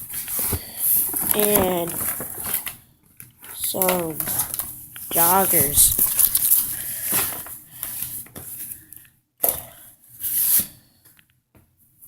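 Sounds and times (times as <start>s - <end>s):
clothing and packaging rustling: 0.0s - 2.8s, 3.5s - 8.8s.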